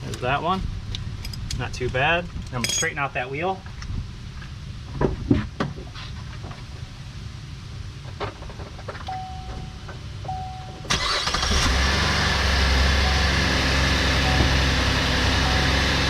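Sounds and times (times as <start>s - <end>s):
car engine starting and idling: 10.2s - 16.0s.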